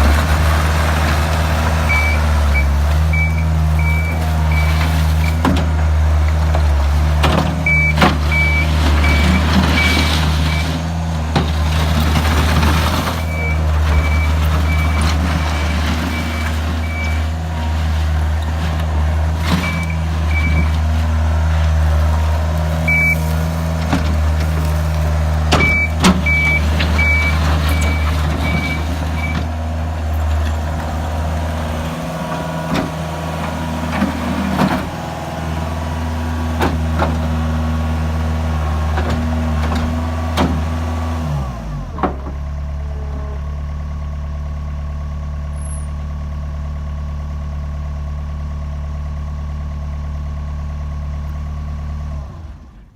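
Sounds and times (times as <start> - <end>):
diesel engine running: 0.0 - 52.9
beeping alarm: 22.9 - 23.2.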